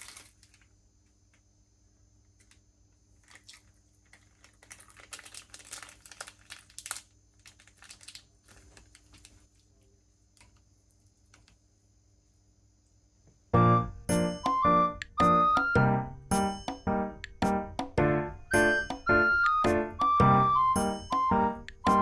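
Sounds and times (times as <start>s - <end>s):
packaging crinkling and rustling: 0.0s - 0.7s, 2.4s - 10.6s
chiming music: 13.6s - 22.0s.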